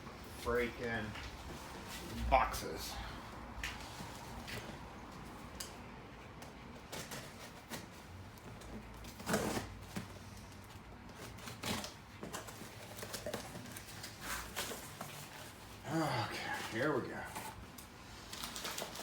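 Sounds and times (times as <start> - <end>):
cardboard boxes being handled: 6.7 - 15.8.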